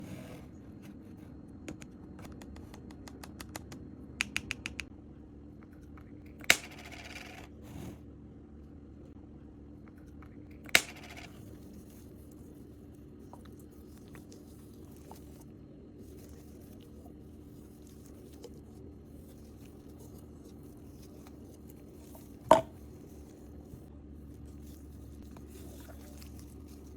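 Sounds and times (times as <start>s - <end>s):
steady low hum: 0.0s - 26.9s.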